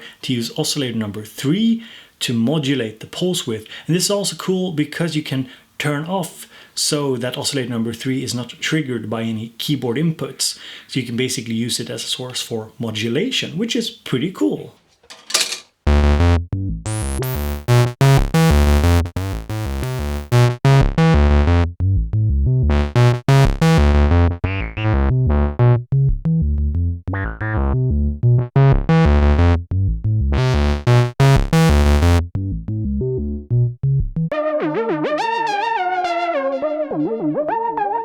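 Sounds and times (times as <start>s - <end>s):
analog synthesizer bass notes: 15.9s - 38.0s.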